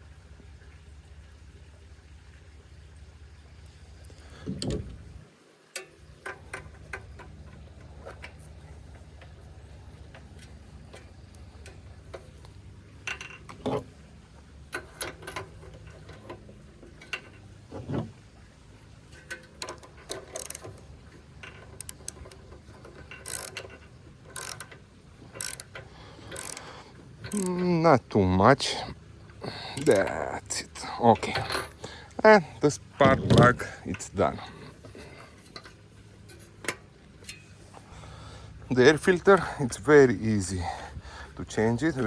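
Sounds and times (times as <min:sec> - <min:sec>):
ratchet wrench clicking: 0:19.1 - 0:27.8, 0:29.5 - 0:30.2.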